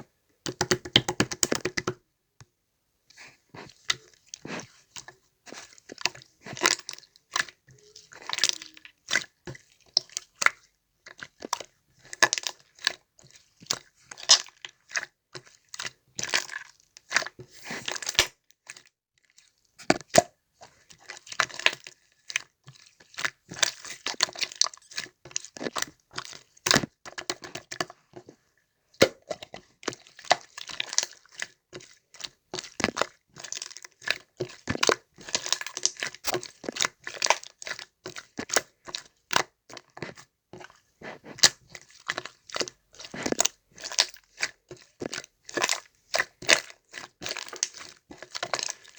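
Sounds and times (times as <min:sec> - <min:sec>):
slime crackling and popping: 0:41.0 - 0:48.9.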